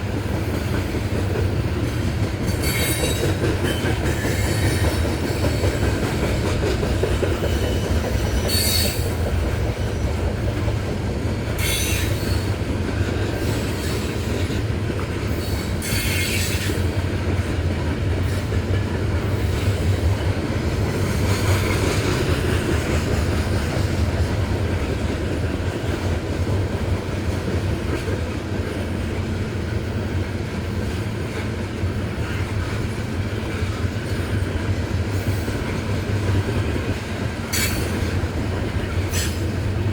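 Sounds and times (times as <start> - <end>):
freight train rumbling on rails: 0.0 - 39.9
wheel squeals: 7.5 - 9.0.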